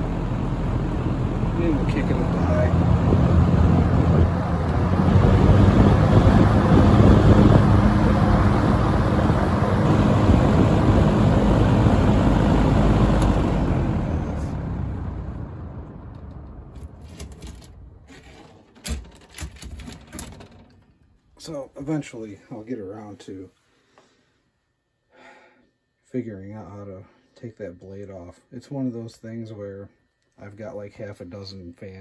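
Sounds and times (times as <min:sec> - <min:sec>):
box fan running: 0:00.0 - 0:22.3.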